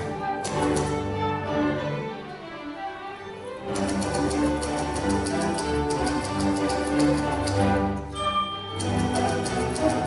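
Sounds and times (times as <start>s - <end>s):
orchestra playing classical piece: 0.0s - 10.0s
typewriter key clicks: 0.4s - 1.0s, 3.8s - 7.6s, 8.8s - 10.0s
typewriter bell ding: 8.2s - 10.0s.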